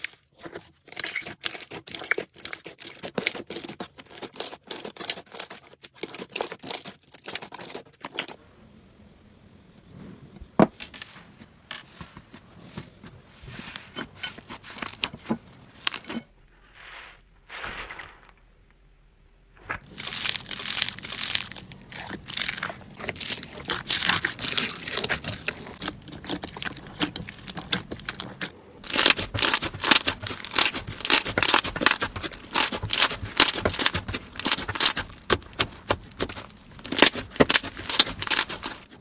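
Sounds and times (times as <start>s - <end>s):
slime squeezed crackling: 19.8s - 39.0s.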